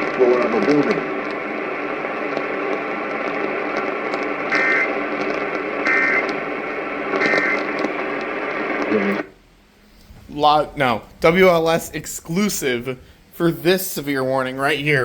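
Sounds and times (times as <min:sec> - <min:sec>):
radio static hissing: 0:00.0 - 0:09.4
digital data squawks: 0:04.5 - 0:04.9, 0:05.8 - 0:06.3, 0:07.2 - 0:07.6.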